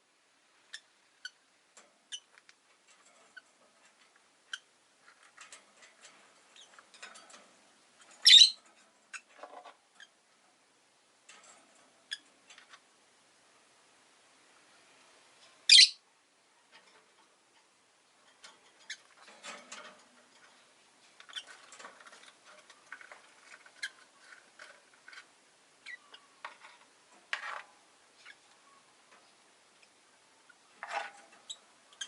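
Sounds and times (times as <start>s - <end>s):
lovebird calls: 8.2s - 9.3s, 15.7s - 16.0s, 25.8s - 26.4s.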